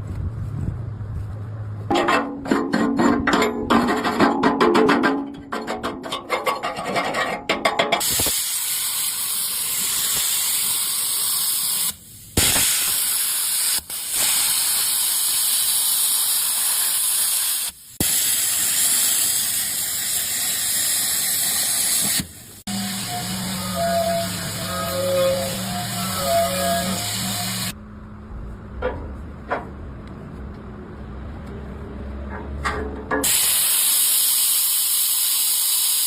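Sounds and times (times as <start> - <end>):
arc welding hiss: 8.0 - 27.8, 33.2 - 36.0.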